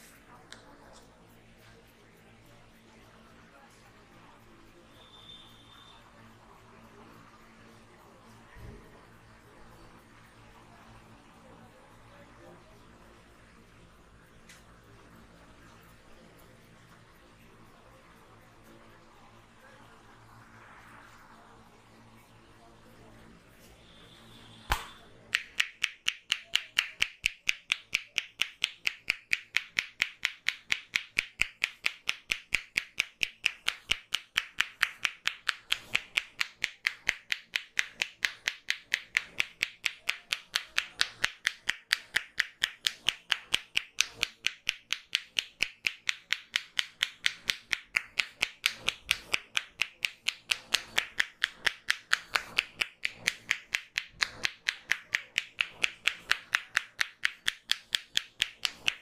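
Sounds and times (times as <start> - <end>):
hands clapping on head: 24.7 - 59.0.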